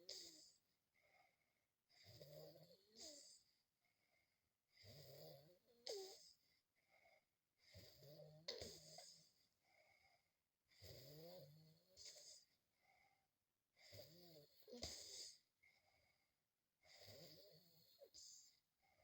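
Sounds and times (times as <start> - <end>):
person snoring faintly: 0.0 - 0.6.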